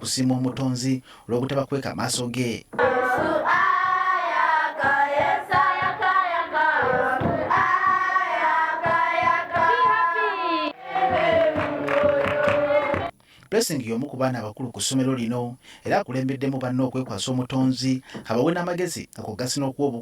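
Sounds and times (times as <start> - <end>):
children singing a hymn: 2.8 - 13.1.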